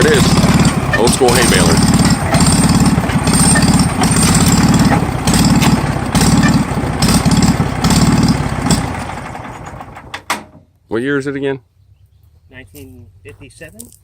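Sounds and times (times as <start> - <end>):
engine pulsing: 0.0 - 10.2
baler mechanical knocks: 0.0 - 10.6.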